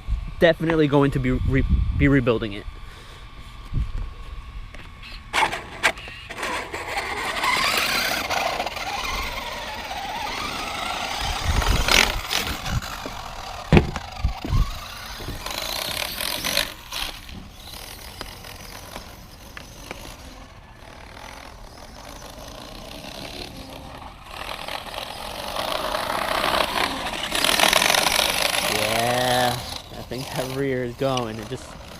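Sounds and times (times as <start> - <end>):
electric motor whining: 0.0 - 31.9
sharp knocks: 13.7 - 14.0.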